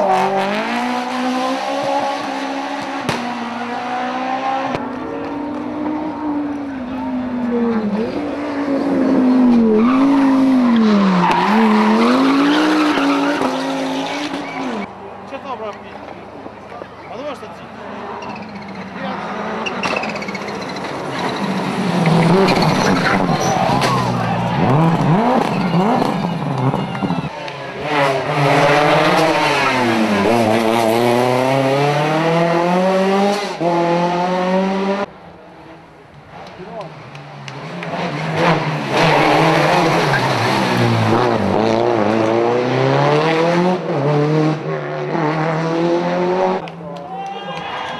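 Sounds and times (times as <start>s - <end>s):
rally car engine revving: 0.0s - 14.9s, 17.9s - 46.7s
tyres skidding on road: 7.5s - 14.9s, 16.8s - 33.6s, 36.3s - 44.6s.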